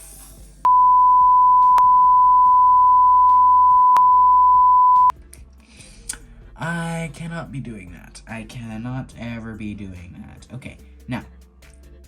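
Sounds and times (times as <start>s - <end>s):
censor bleep tone: 0.7s - 5.1s.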